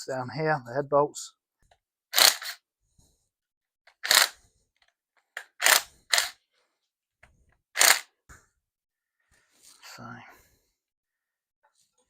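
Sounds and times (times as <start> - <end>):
hand tool clicking: 7.8 - 8.1.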